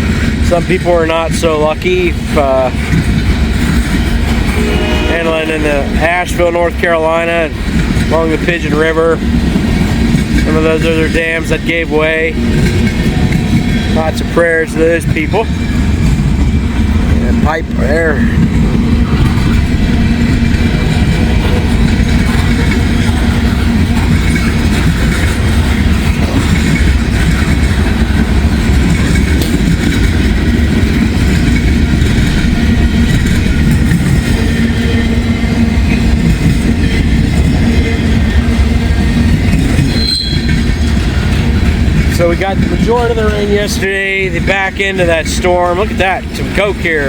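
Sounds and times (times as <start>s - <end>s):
freight train cars rolling past: 0.0s - 47.0s.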